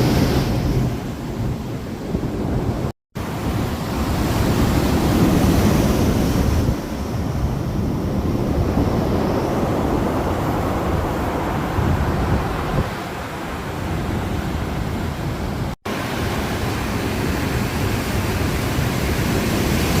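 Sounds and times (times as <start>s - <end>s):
wind buffeting microphone: 0.0s - 15.8s
storm surf breaking: 0.0s - 20.0s.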